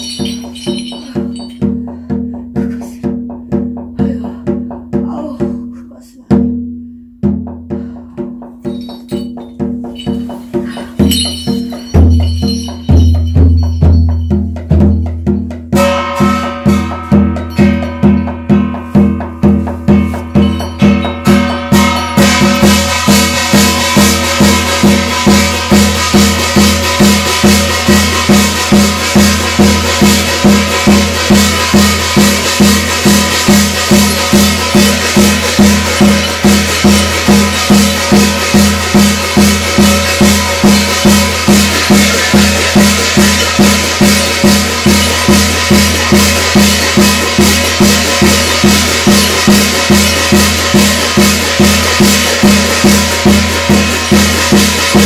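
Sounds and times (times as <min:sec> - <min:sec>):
sustained ringing tones: 0:00.0 - 0:02.0, 0:08.6 - 0:19.5, 0:20.1 - 0:26.5, 0:29.1 - 0:51.4
drums and rattling percussion: 0:00.0 - 0:55.0.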